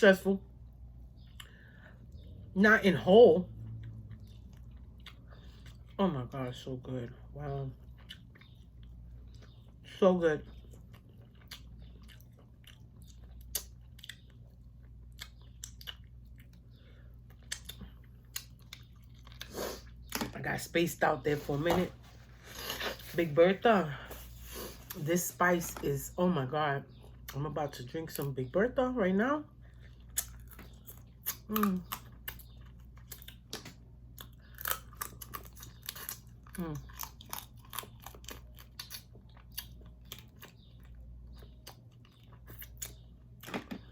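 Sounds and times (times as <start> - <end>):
chewing with wet crunches: 1.0 - 6.0, 7.7 - 20.2, 29.5 - 43.5.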